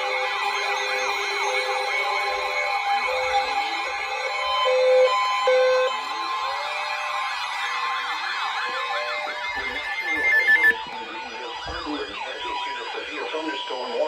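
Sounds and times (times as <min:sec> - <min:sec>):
siren-like wailing tones: 0:07.4 - 0:14.0
steady high tone: 0:08.8 - 0:12.9.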